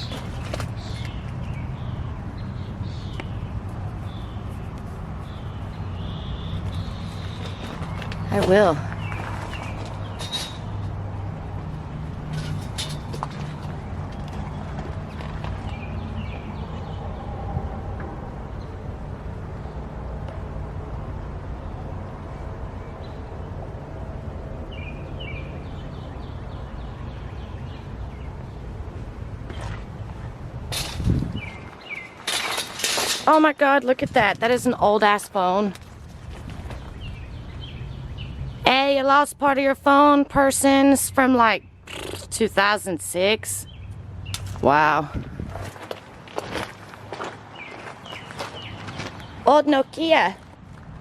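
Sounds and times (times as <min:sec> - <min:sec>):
bird chirping: 0:00.0 - 0:10.8, 0:31.3 - 0:32.2, 0:36.7 - 0:38.7
low outdoor rumble: 0:00.0 - 0:51.0
steady low rumble: 0:43.6 - 0:47.5.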